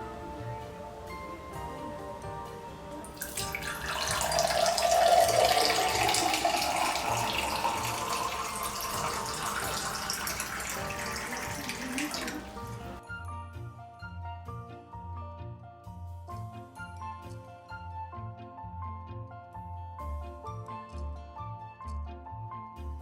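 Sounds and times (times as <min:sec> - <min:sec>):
soft background music: 0:00.0 - 0:23.0
tap water running into sink: 0:03.1 - 0:13.0.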